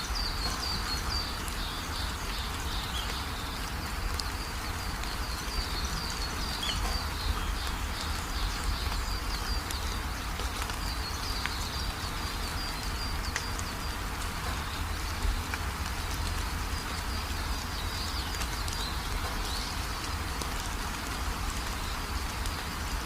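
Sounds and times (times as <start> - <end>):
rain falling: 0.0 - 23.0.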